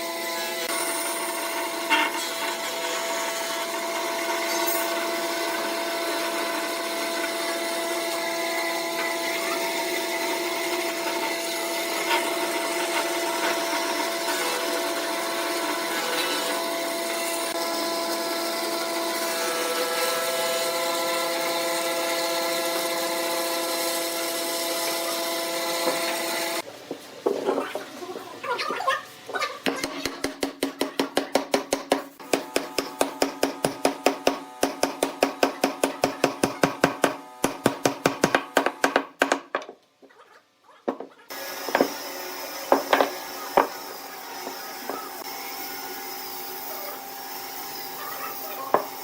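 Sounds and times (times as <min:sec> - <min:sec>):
tool scraping spinning wood: 0:18.8 - 0:28.1.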